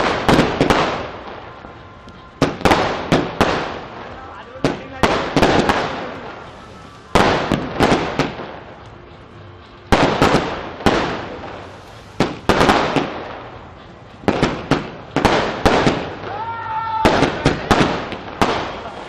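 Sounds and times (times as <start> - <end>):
fireworks bangs with echo: 0.0 - 19.0.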